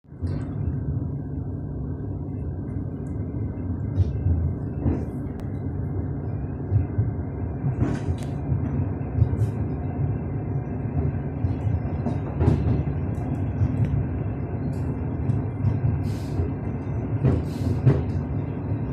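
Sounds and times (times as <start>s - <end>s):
train wheels rumbling on track: 0.1s - 18.9s.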